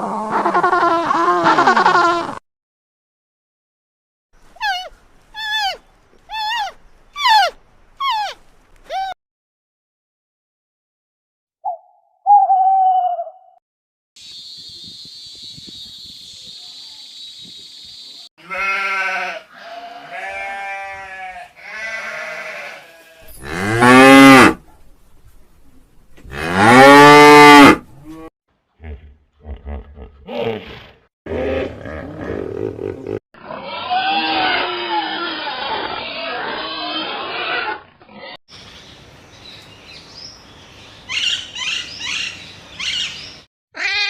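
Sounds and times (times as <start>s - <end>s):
cattle mooing: 18.4s - 24.6s
low grunting pulses: 28.8s - 33.2s
noisy animal sound: 31.3s - 38.4s.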